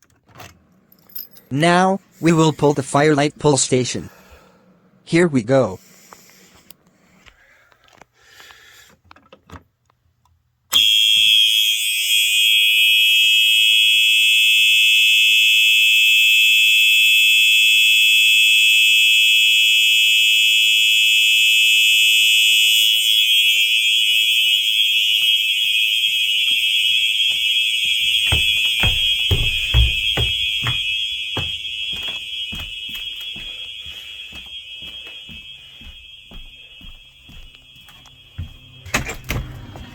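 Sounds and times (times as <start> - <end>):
fire alarm horn tone: 10.7 - 39.9
low thumps: 27.9 - 33.6.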